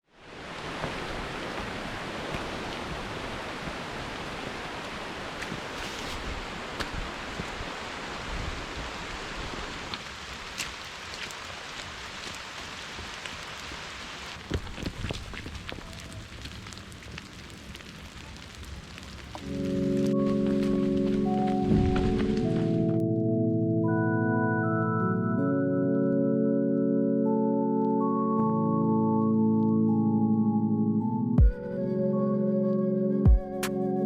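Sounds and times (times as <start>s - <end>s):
heavy rain falling: 0.1s - 23.0s.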